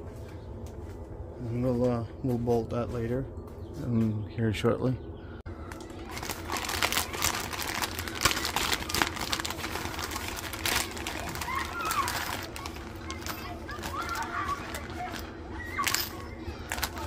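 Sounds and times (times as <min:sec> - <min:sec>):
faint distant voices: 0:01.4 - 0:17.0
plastic parts rustling and clicking: 0:05.7 - 0:17.0.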